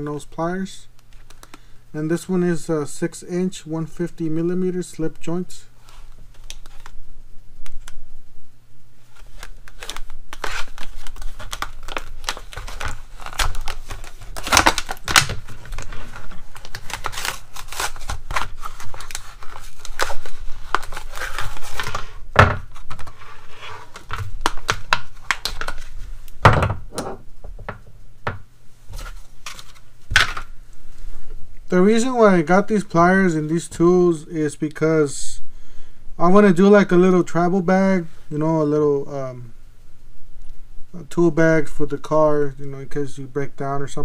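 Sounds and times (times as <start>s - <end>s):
packaging torn and crinkled: 9.2s - 22.0s, 23.8s - 25.9s.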